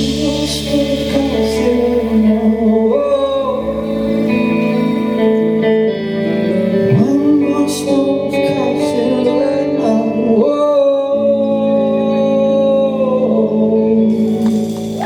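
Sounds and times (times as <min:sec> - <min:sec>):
man singing long held notes: 0:00.0 - 0:15.0
sustained guitar chords: 0:00.0 - 0:15.0.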